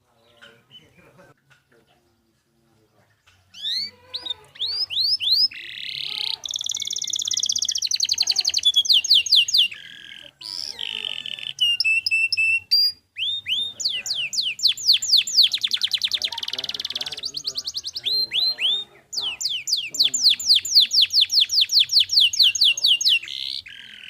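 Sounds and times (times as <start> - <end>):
canary singing: 3.2 - 24.0.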